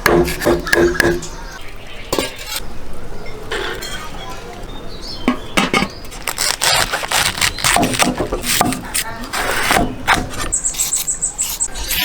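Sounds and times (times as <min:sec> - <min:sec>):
dishes and utensils clinking: 0:03.5 - 0:04.4.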